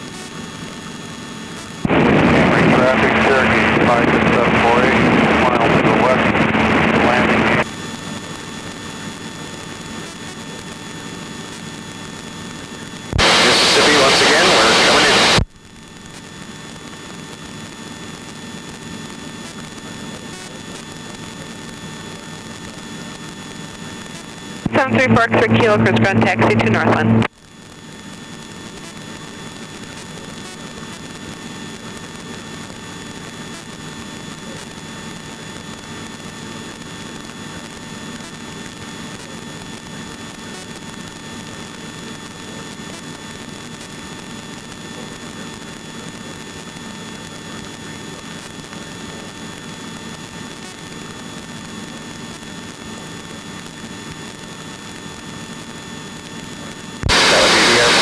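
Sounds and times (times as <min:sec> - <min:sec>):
helicopter drone from cabin: 0:01.9 - 0:08.5, 0:13.2 - 0:15.4, 0:57.1 - 0:58.0.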